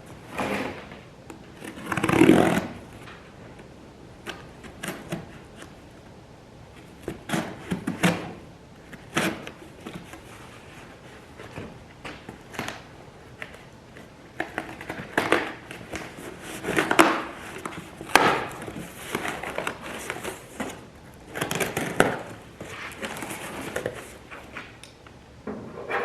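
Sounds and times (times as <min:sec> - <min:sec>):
packaging crinkling and rustling: 0:09.0 - 0:24.8.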